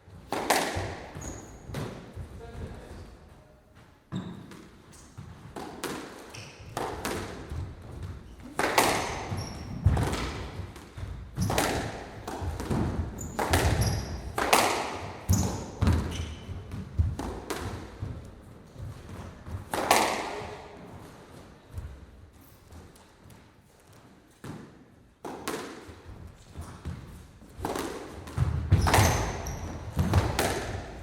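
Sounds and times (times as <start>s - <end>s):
squash ball hitting walls: 0.0s - 2.9s, 4.1s - 31.0s
shoes squeaking on floor: 1.0s - 5.6s, 6.2s - 6.8s, 7.8s - 12.2s, 13.0s - 17.0s, 21.7s - 24.5s, 28.4s - 31.0s.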